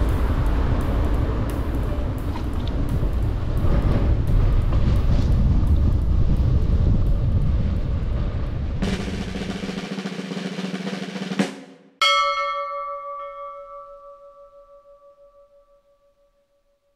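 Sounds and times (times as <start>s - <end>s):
snare drum roll: 8.8s - 11.8s
bell strike ringing: 12.0s - 16.3s.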